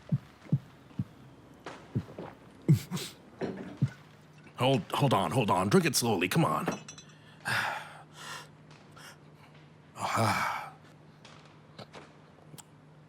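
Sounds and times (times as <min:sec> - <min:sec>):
man sighing: 0:10.0 - 0:10.8.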